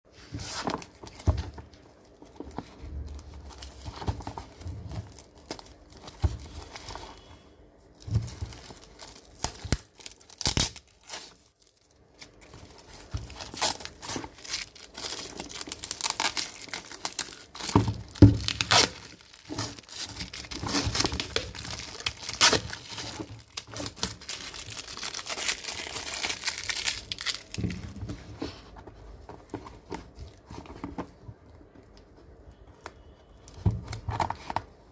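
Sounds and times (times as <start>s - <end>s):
packaging tearing and crinkling: 0.5s - 7.2s, 8.0s - 28.0s.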